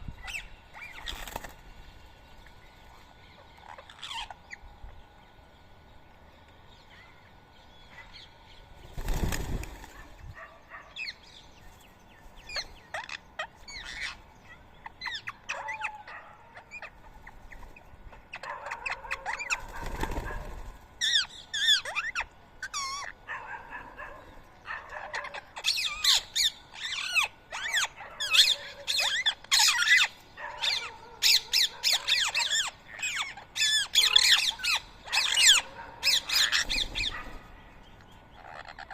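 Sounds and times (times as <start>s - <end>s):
parakeets squawking: 0.2s - 1.5s, 2.9s - 4.7s, 12.4s - 38.9s.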